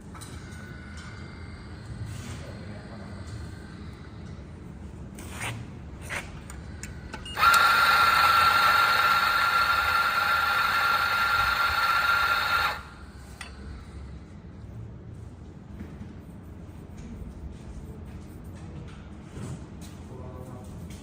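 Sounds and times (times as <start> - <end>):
coffee grinder motor whine: 7.4 - 13.1.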